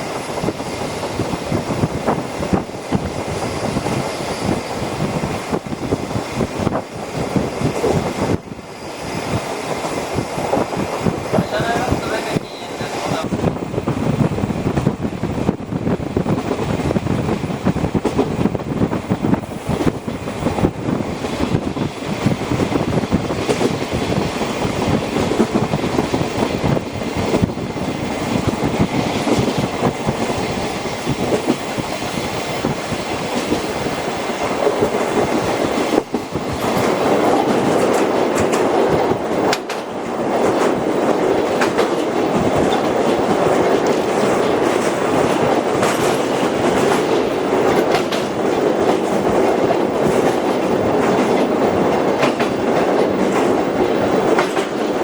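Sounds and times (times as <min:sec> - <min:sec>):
train wheels rumbling: 0:00.0 - 0:55.0
wheels clacking over rail joints: 0:16.2 - 0:55.0.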